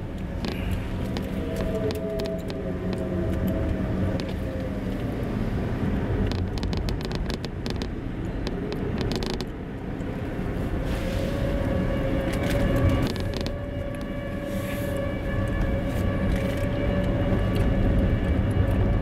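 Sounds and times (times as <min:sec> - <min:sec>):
car engine rumbling: 0:00.0 - 0:19.0
road noise: 0:00.0 - 0:19.0
sharp clicks: 0:06.3 - 0:09.6.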